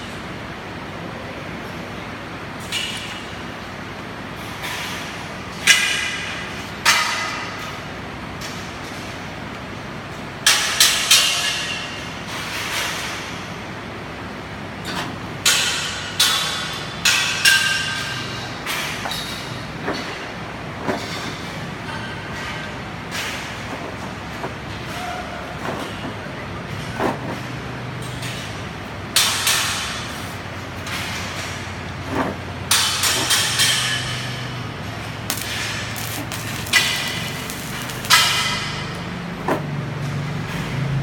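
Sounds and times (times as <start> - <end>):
workshop hum: 0.0 - 41.0
metal clanks on steel: 32.7 - 39.1.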